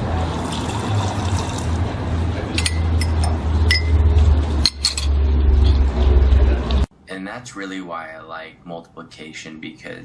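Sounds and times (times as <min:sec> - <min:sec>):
liquid pouring: 0:00.2 - 0:01.8
crockery clinking: 0:02.5 - 0:04.0, 0:04.6 - 0:05.8.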